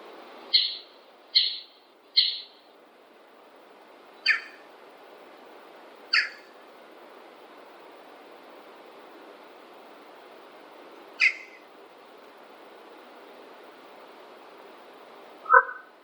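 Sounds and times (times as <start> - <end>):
steady background hiss: 0.0 - 16.0
short sharp bird calls: 0.5 - 2.6, 4.2 - 4.6, 11.2 - 11.6, 15.5 - 15.9.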